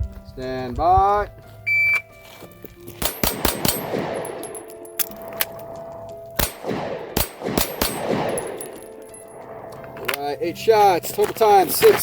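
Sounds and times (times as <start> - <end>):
pistol shots: 3.0 - 10.3.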